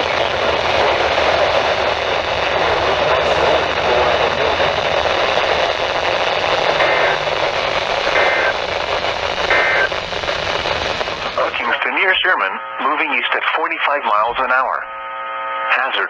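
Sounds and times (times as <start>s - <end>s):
synthesized voice speaking: 0.0s - 7.3s, 11.2s - 14.8s
loud radio static hiss: 0.0s - 15.0s.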